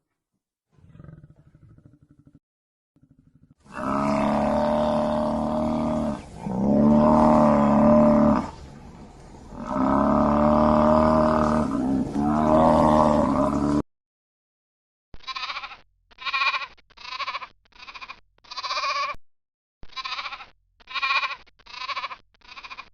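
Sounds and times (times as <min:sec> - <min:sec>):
lion roaring: 0:00.8 - 0:02.4, 0:03.0 - 0:13.8.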